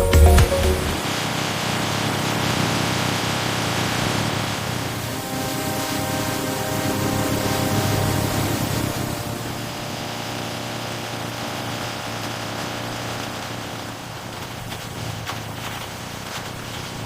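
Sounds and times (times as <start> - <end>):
low machine hum: 4.8 - 14.5.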